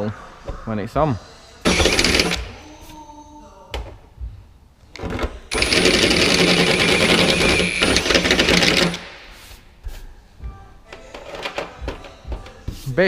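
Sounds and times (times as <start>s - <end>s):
power drill boring through sheet metal: 1.7s - 2.5s, 5.5s - 9.2s.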